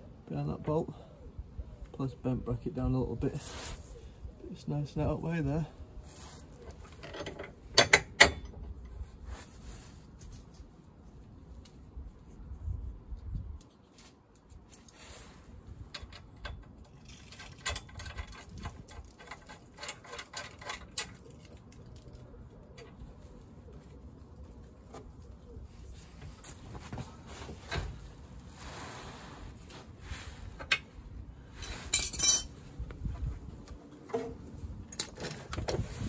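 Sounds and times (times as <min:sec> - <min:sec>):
metallic clicks and clanks: 0:06.8 - 0:08.9, 0:15.9 - 0:23.0.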